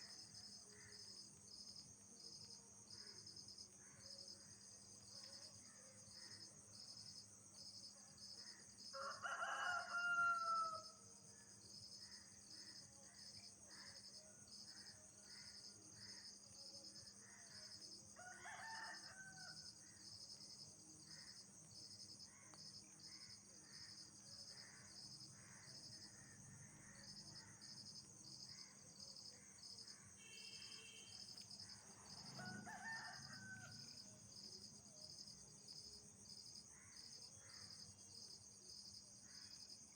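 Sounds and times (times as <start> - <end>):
insect chirping: 0.0 - 39.9
rooster crowing: 9.0 - 11.0, 18.2 - 19.6, 32.1 - 34.0
insects trilling: 11.8 - 39.9.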